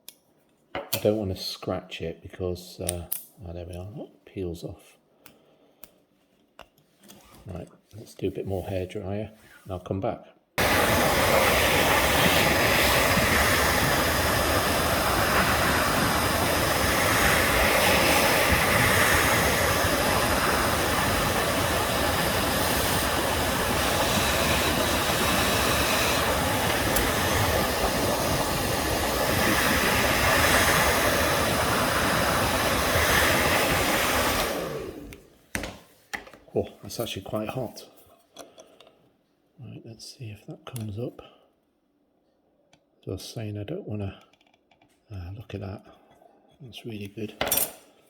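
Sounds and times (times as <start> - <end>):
hairdryer blowing: 10.6 - 35.3.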